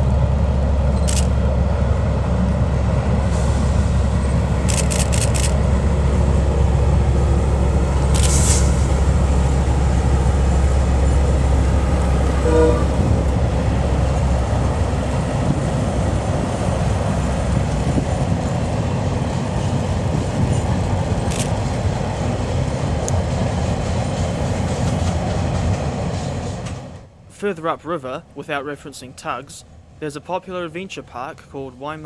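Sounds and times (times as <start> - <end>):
locomotive engine drone: 0.0 - 25.9
train wagons rumbling: 0.0 - 27.1
brief tone: 12.4 - 13.0.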